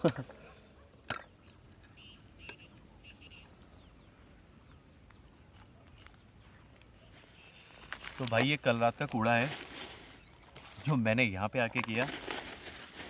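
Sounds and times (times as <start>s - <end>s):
faint high bird chirps: 1.2s - 8.0s.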